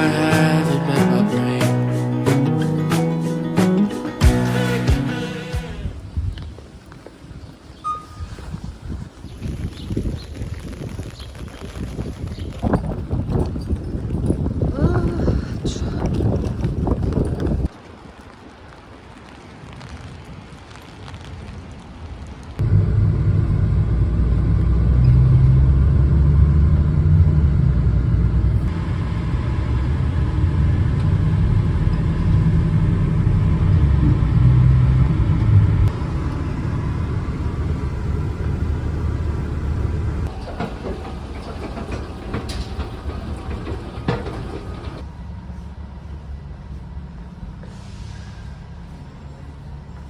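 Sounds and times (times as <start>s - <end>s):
vehicle rumble on the move: 22.6s - 50.0s.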